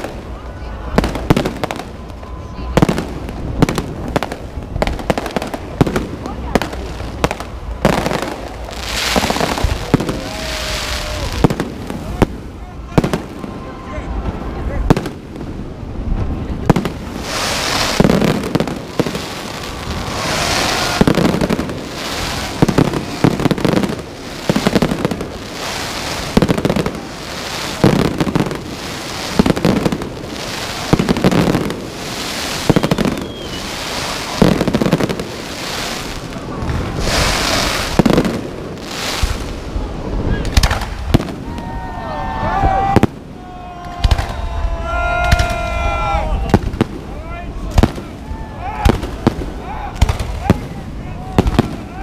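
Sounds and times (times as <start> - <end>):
crackling echoing tail: 0.0 - 41.9, 42.6 - 52.0
firework shells bursting: 40.4 - 41.4.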